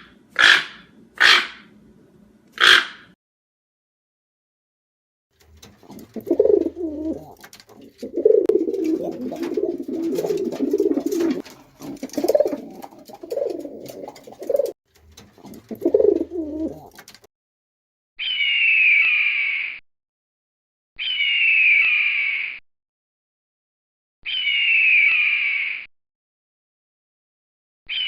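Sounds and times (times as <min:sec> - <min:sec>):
pigeon cooing: 0:05.8 - 0:14.8, 0:15.4 - 0:17.0.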